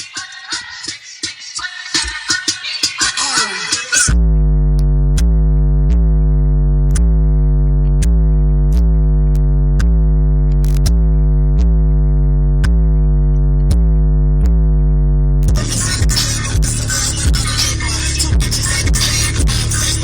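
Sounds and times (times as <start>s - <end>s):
deep synthesizer bass note: 4.1s - 20.0s.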